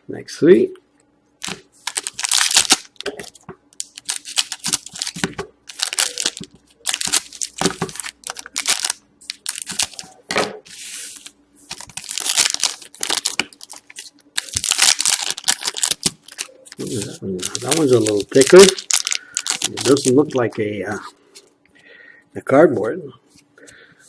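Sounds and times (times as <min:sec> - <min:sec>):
card pack wrappers tearing: 0:01.4 - 0:10.2, 0:11.0 - 0:21.1.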